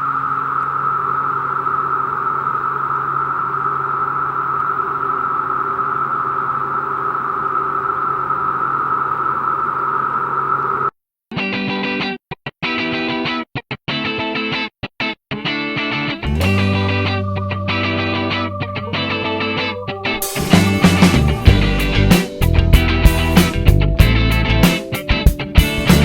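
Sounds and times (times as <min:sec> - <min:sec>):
cicadas droning buzz: 0:00.0 - 0:10.9.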